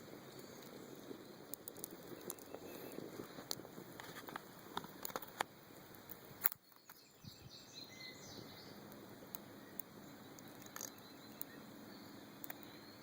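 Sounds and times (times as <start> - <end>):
campfire crackling and popping: 0.0 - 7.0, 8.8 - 11.8, 12.4 - 13.0
outdoor hiss: 0.0 - 13.0.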